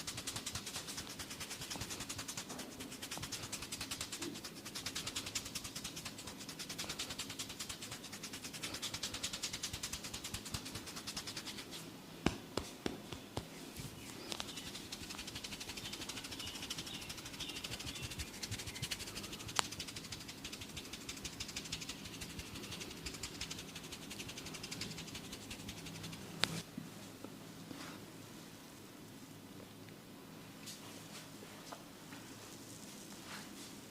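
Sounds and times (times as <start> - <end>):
rapid tapping strokes: 0.0 - 13.5, 14.1 - 26.6
soft rubbing: 0.0 - 28.1.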